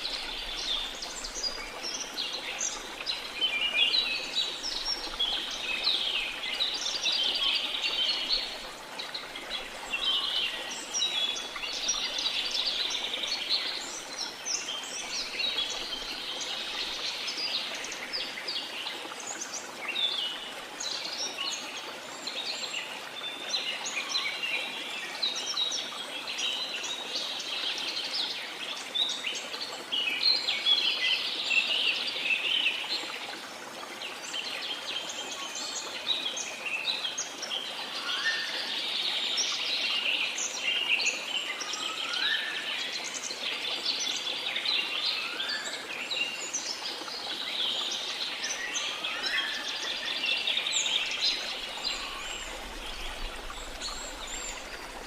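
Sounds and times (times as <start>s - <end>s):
songbirds chirping and twittering: 0.0s - 55.0s
sea noise: 50.7s - 55.0s.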